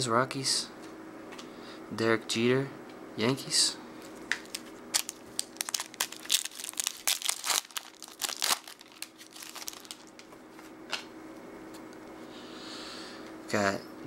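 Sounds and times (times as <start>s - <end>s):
wrapper crinkling: 4.3s - 10.3s.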